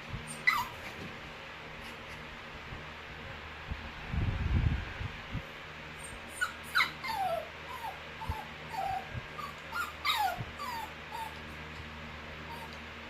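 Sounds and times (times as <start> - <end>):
dog whining: 0.3 - 0.9, 6.0 - 11.5, 12.5 - 12.8.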